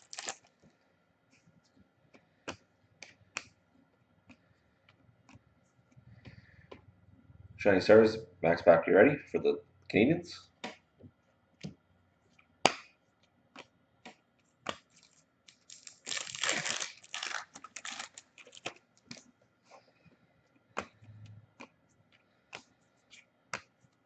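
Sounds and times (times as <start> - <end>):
wrapper tearing and crinkling: 0.0 - 0.5, 15.0 - 18.8
cards clicking and tapping: 21.6 - 23.8.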